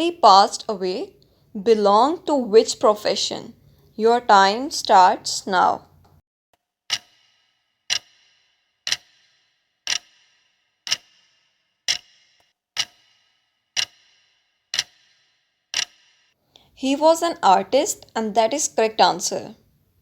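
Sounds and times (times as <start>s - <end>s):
clock ticks with bright ring: 6.9s - 19.4s.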